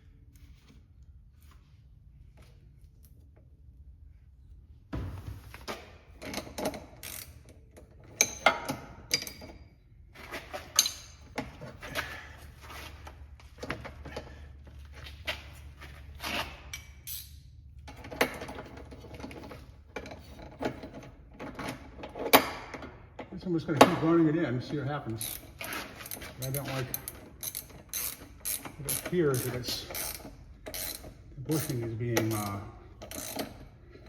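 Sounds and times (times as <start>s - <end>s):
ratchet clicking: 6.2s - 7.6s, 25.1s - 33.8s.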